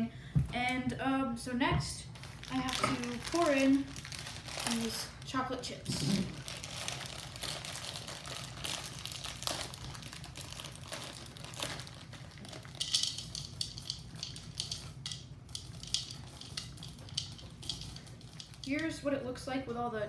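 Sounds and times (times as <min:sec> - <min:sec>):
plastic bag crinkling: 0:02.2 - 0:18.9
chocolate chips pouring into batter: 0:06.2 - 0:18.7.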